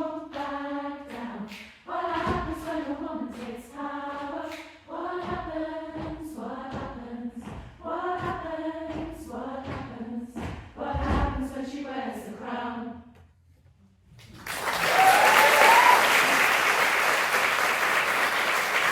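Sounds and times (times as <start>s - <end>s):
choir singing: 0.0s - 13.1s
audience applause: 14.2s - 18.9s.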